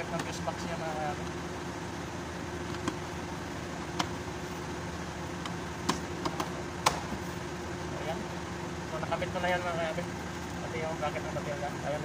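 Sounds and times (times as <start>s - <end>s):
steady background hum: 0.0s - 12.0s.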